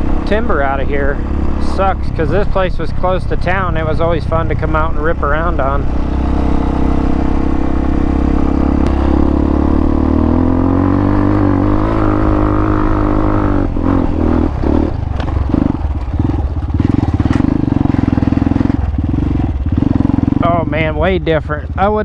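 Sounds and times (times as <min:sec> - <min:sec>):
motorcycle engine revving: 0:00.0 - 0:22.0
clatters over rough ground: 0:13.6 - 0:20.0.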